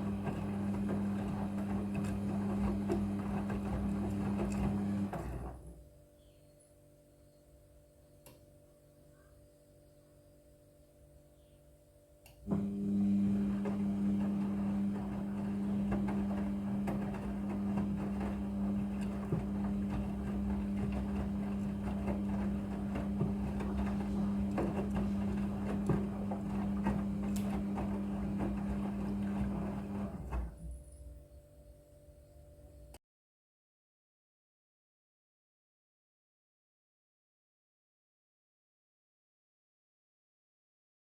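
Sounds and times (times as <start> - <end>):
machine humming and rattling: 12.5 - 30.9.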